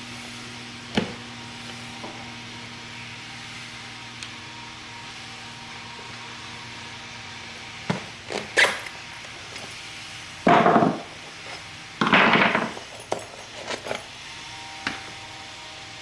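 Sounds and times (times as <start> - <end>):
leather scraping: 7.9 - 14.2.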